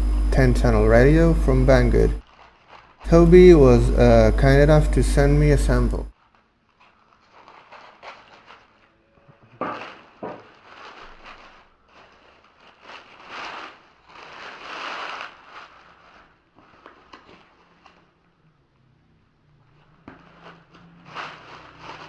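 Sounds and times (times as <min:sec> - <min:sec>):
packaging rustling and crackling: 0:02.2 - 0:03.1, 0:06.2 - 0:18.3, 0:19.8 - 0:22.0.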